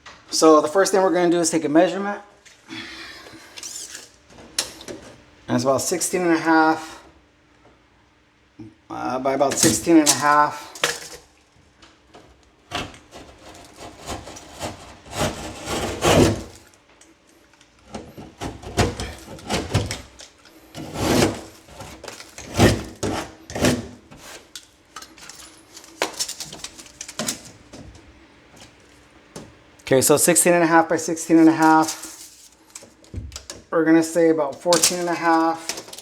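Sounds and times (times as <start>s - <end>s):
scraping on drywall board: 12.7s - 16.7s, 17.9s - 24.6s.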